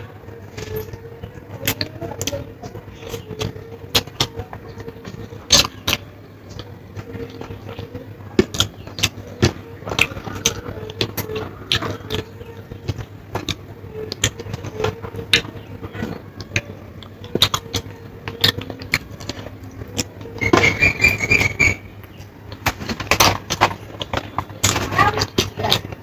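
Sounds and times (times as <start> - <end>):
chewing with wet mouth clicks: 3.0 - 20.3.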